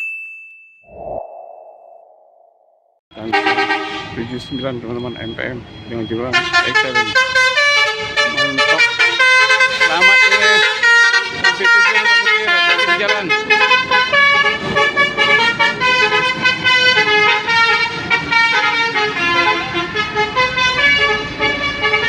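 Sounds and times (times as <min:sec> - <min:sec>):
bus musical horn melody: 0:03.2 - 0:04.3, 0:06.3 - 0:22.0.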